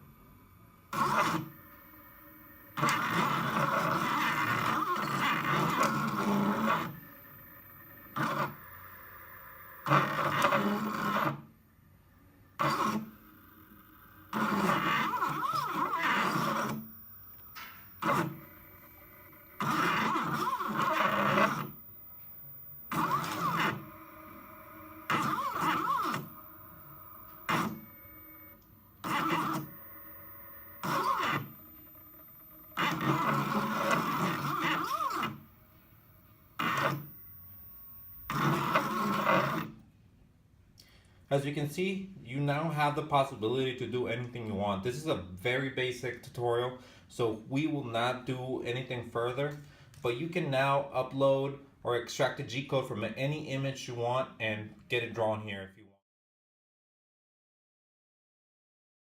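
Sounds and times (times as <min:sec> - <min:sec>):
stepper motors buzzing: 0:00.0 - 0:39.8.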